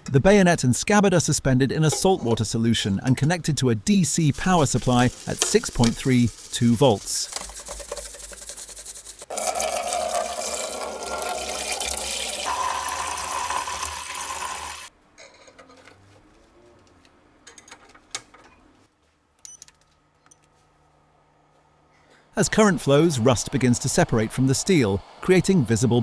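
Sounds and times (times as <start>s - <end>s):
water pouring into container: 4.3s - 14.9s.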